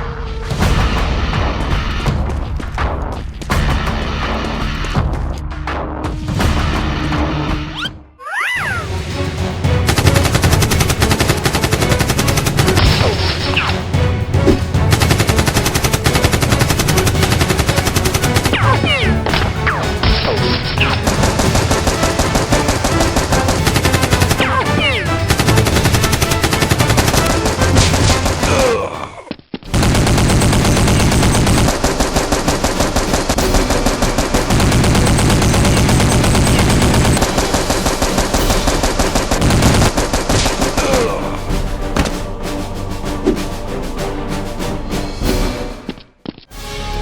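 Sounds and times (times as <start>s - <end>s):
rapid automatic gunfire: 9.8s - 13.2s, 14.8s - 19.0s, 20.0s - 28.6s, 29.7s - 41.2s
faint background music: 30.7s - 44.7s.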